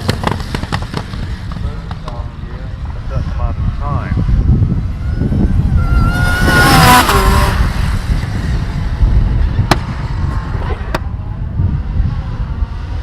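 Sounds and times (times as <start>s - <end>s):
sharp cracks: 0.0s - 2.4s
deep rumble: 0.0s - 13.0s
race car passing at speed: 4.1s - 13.0s.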